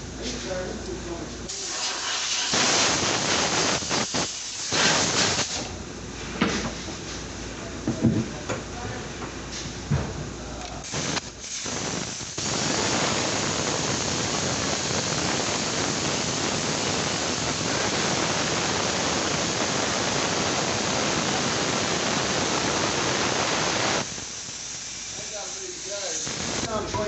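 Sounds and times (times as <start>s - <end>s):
high-pressure jet hissing: 1.5s - 5.7s, 10.8s - 26.8s.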